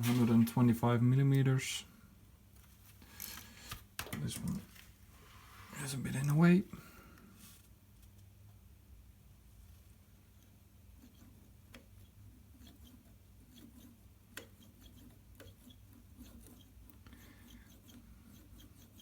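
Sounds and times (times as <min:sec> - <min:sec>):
scriber scratching on steel: 0:11.0 - 0:19.0.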